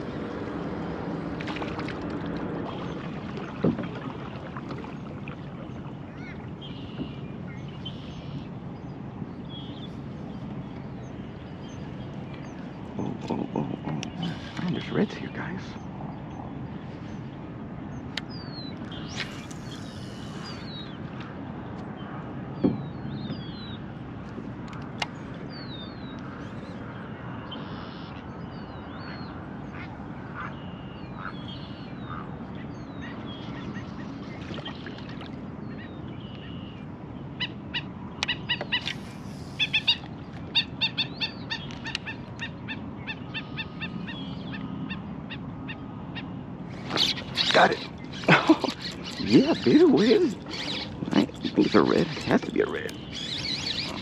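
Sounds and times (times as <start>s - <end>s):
birds chirping: 0.0s - 54.0s
bird chattering runs: 46.8s - 54.0s.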